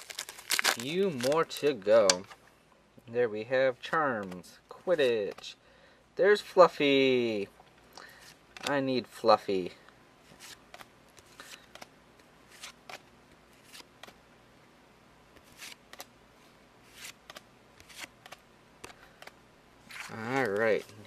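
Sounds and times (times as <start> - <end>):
cards being flipped by hand: 0.0 - 2.3, 10.3 - 14.2, 15.4 - 16.1, 16.8 - 21.0.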